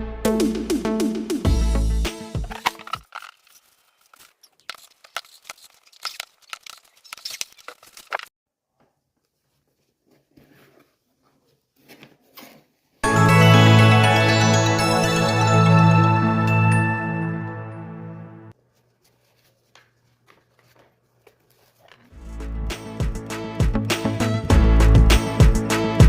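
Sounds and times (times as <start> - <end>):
packaging tearing and crinkling: 2.5 - 8.3
handling noises: 2.5 - 13.0, 18.6 - 22.4.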